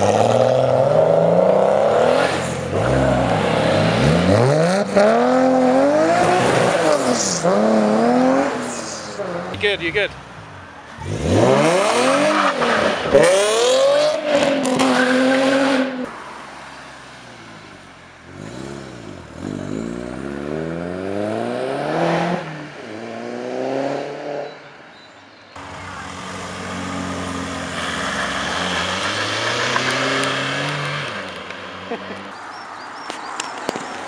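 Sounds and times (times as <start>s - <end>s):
car engines accelerating: 0.0s - 34.0s.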